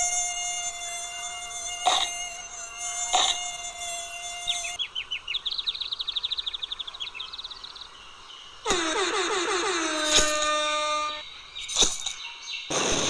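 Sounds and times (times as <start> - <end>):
mosquito whining: 0.0 - 4.8, 8.7 - 11.3.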